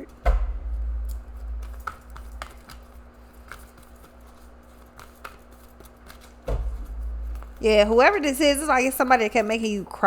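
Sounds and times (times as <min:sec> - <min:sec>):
steady low hum: 0:00.0 - 0:10.0
cards clicking and tapping: 0:01.0 - 0:07.6.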